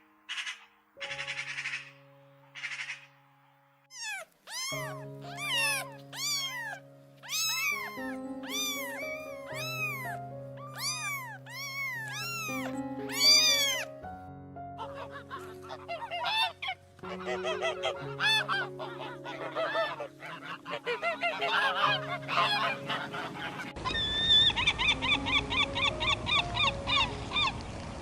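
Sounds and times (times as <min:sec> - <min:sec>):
background music with held notes: 0:00.0 - 0:28.0
cat meowing: 0:03.9 - 0:13.9.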